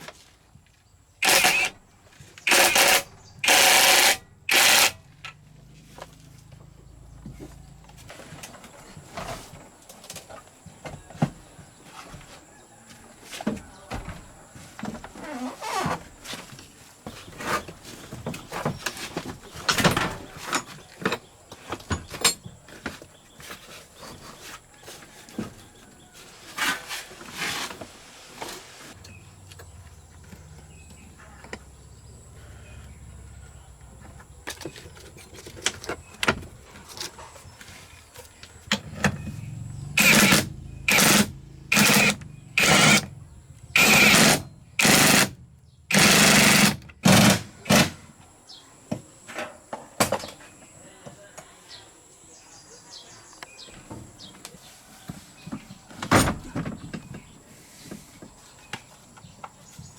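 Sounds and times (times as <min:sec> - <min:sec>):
knocks and clanks on metal parts: 0:01.2 - 0:01.8, 0:02.5 - 0:05.4, 0:18.2 - 0:23.0, 0:49.3 - 0:50.5.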